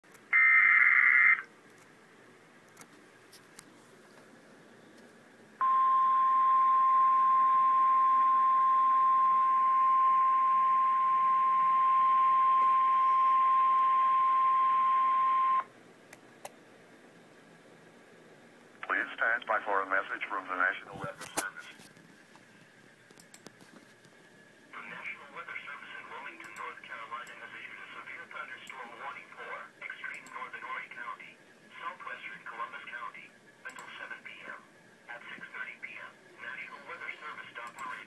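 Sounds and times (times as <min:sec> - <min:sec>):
steady warning alarm tone: 0:00.4 - 0:01.5, 0:05.6 - 0:15.7.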